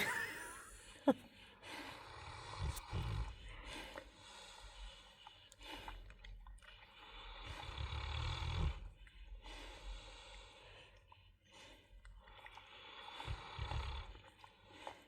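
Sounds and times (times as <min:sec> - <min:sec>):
person snoring: 0:02.0 - 0:03.6, 0:07.4 - 0:08.9, 0:13.1 - 0:14.1.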